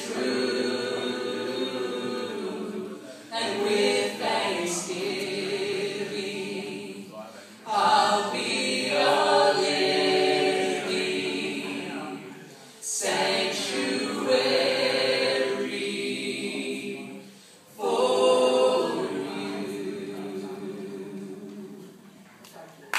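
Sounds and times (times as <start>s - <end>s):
vocal group singing in harmony: 0.0s - 22.0s.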